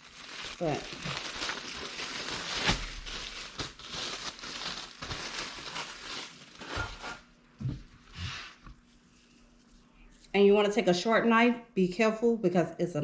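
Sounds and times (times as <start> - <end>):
bread bag crinkling: 0.0 - 7.2.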